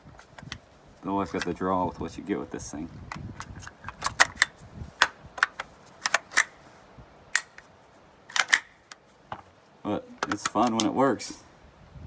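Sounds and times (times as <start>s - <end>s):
pistol metallic clicks: 3.4s - 6.6s, 7.3s - 7.7s, 8.3s - 9.0s, 10.2s - 11.0s.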